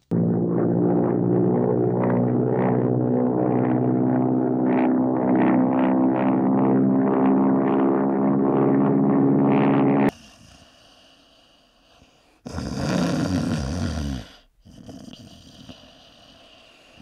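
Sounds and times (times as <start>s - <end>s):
loud snore: 10.1s - 17.0s.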